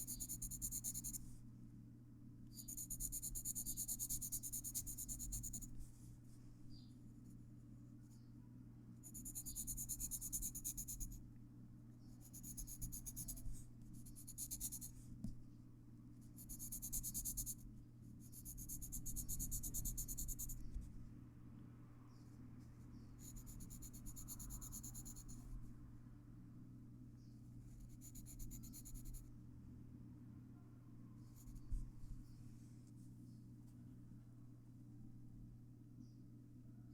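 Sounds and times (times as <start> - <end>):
pencil scratching on paper: 0.0 - 1.2, 2.6 - 5.8, 9.0 - 11.1, 12.2 - 14.9, 16.4 - 17.6, 23.2 - 25.4, 27.8 - 29.2
steady low hum: 0.0 - 36.9.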